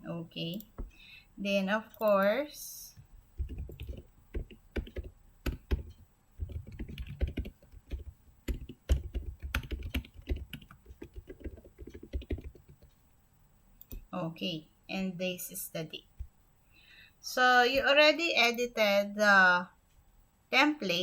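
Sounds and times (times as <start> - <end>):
keyboard typing clicks: 3.4 - 13.0, 13.8 - 14.1.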